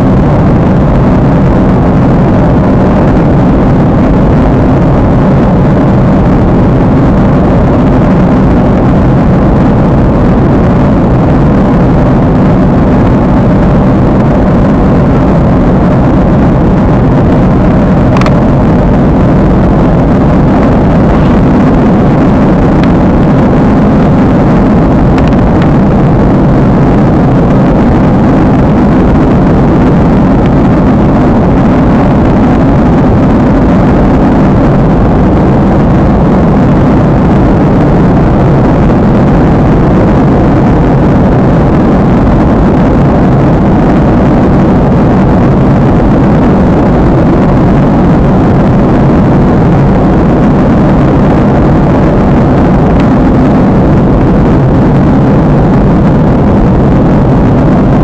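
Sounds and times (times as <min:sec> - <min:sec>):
jet engine rumble in cabin: 0:00.0 - 0:58.0
rushing air: 0:00.0 - 0:58.0.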